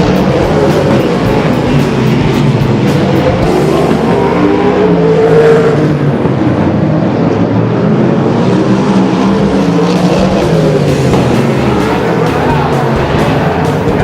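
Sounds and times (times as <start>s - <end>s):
race car engines: 0.0s - 14.0s.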